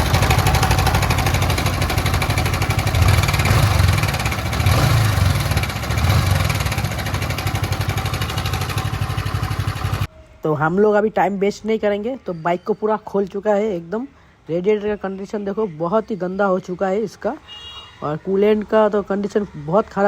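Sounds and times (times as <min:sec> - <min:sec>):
motorcycle engine rattling: 0:00.0 - 0:10.1.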